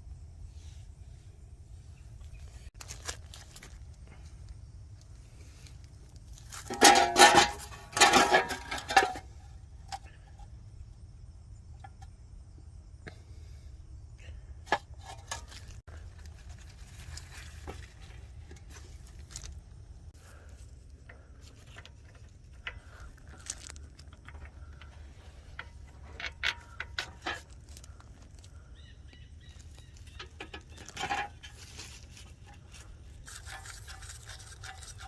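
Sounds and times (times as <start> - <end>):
metal clattering with ringing: 6.6 - 9.3.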